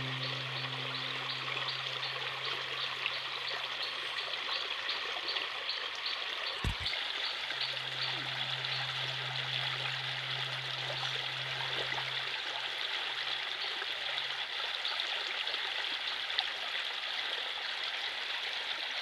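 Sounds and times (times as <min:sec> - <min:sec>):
low hum: 0:00.0 - 0:04.3, 0:07.5 - 0:14.1
running water rushing: 0:00.0 - 0:16.8.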